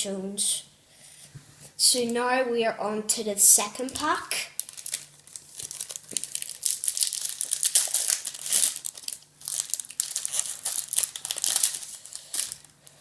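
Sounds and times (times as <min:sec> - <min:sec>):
foil packet tearing and crinkling: 0:03.8 - 0:13.0.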